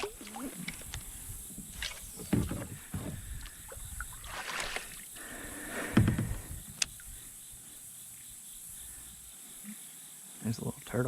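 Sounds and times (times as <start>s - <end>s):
knocks against kayak hull: 2.2s - 3.2s, 5.9s - 6.5s.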